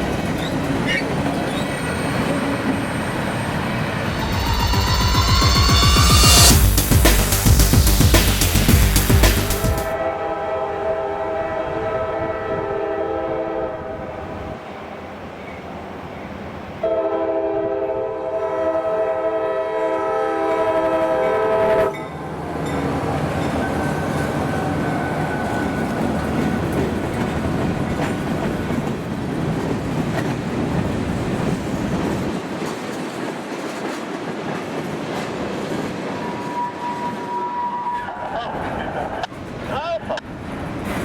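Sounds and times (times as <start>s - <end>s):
train rumble and wheel clatter: 0.0s - 8.0s, 9.4s - 41.0s
train horn: 9.9s - 14.6s, 16.8s - 22.0s, 36.2s - 38.2s.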